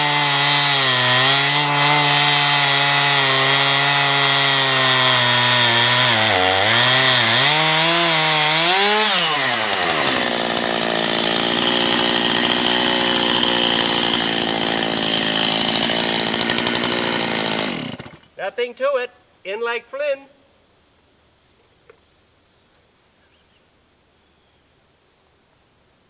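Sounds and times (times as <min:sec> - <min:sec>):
chainsaw cutting a log: 0:00.0 - 0:18.3.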